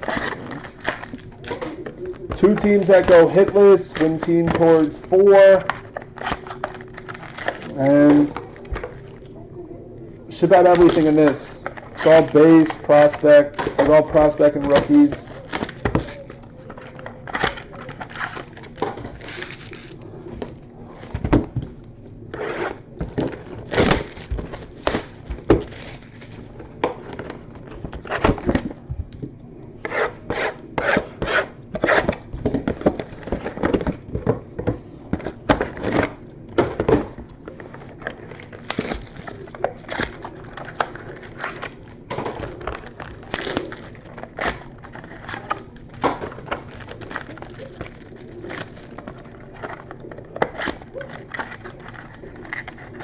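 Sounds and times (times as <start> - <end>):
cards rustling and shuffling: 0.0 - 9.3, 10.4 - 20.0, 36.8 - 53.0.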